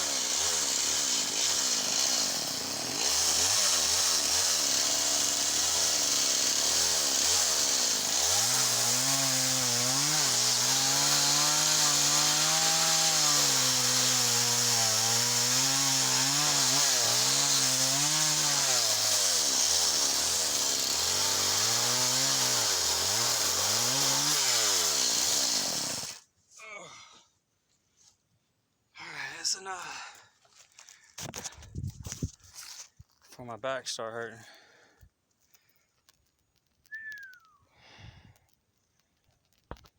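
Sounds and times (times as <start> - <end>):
chainsaw cutting wood: 0.0 - 26.3.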